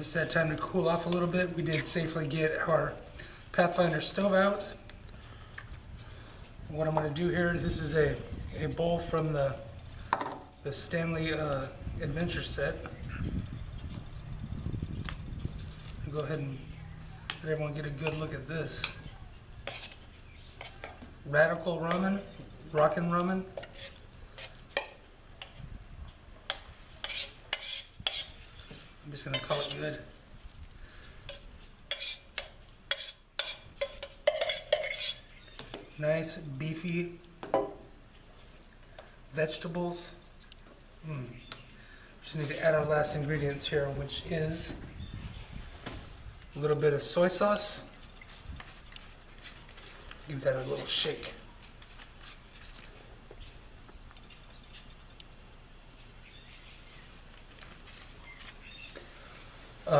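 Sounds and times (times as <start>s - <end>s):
utensil scraping metal pot: 17.3s - 21.0s, 22.8s - 25.6s, 26.5s - 28.4s, 29.2s - 30.0s, 31.2s - 35.3s.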